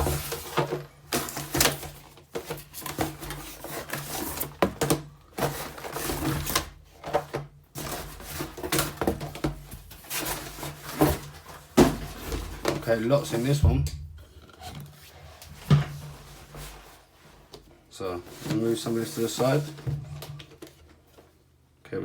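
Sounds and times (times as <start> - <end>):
cardboard packaging rustling: 0.0 - 13.6, 18.2 - 21.4.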